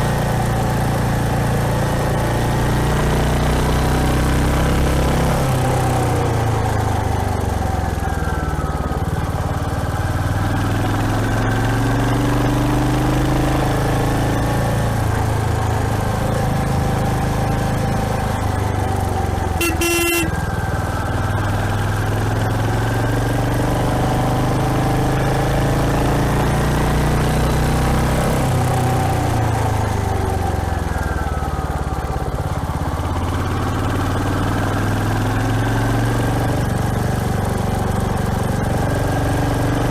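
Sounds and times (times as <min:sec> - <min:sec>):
motorcycle engine running: 0:00.0 - 0:39.9
vehicle horn honking: 0:19.6 - 0:20.5.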